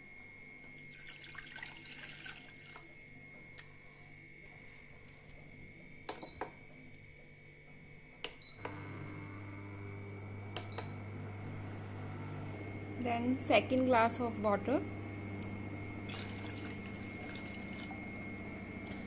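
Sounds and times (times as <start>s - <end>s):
water pouring into a pan: 0.8s - 2.8s, 16.1s - 17.9s
steady low hum: 2.6s - 19.0s.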